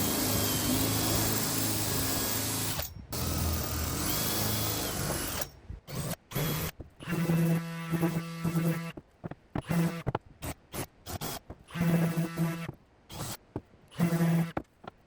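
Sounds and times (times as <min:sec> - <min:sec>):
power drill drilling wood: 0:00.0 - 0:05.5.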